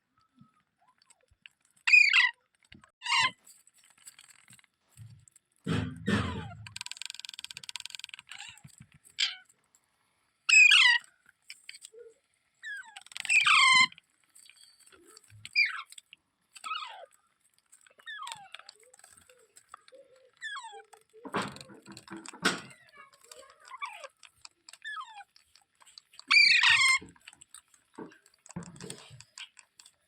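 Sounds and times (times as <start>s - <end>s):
parrot giving shrill calls: 1.9s - 2.4s, 10.5s - 11.0s, 26.2s - 27.1s.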